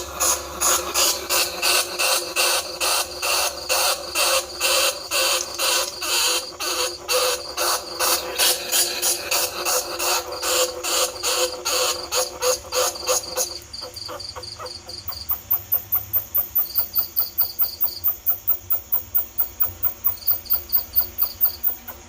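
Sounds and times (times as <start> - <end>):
rhythmic squeaks and ticks: 0.0 - 22.0.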